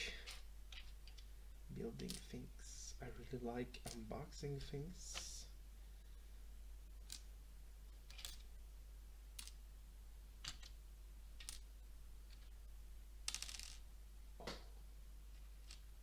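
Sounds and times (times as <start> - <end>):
plastic bricks clicking: 0.3 - 1.3, 8.0 - 8.5, 9.4 - 9.6, 10.4 - 10.8, 11.4 - 11.7, 13.2 - 13.8, 15.3 - 15.9.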